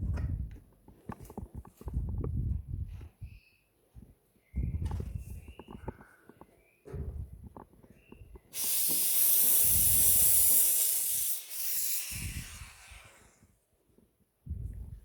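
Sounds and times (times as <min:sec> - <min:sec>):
espresso steam wand hissing: 0:08.5 - 0:13.4.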